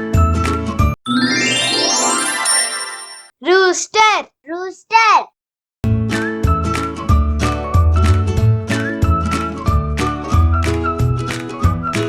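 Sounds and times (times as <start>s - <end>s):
upbeat children's music: 0.0s - 4.1s, 5.9s - 12.0s.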